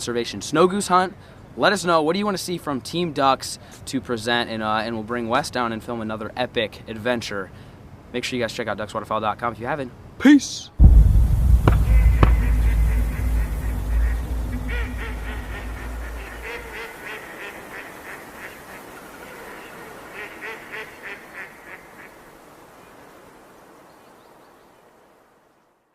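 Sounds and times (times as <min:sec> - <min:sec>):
deep rumble: 0:10.8 - 0:16.9
geese honking: 0:11.7 - 0:18.0.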